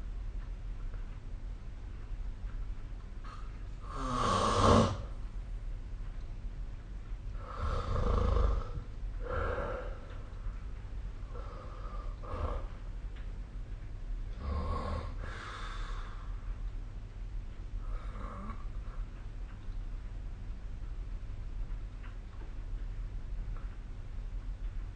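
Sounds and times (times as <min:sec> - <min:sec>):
steady low hum: 0:00.0 - 0:24.9
person snoring: 0:03.8 - 0:05.1, 0:07.4 - 0:10.0, 0:14.4 - 0:15.5, 0:17.8 - 0:18.6.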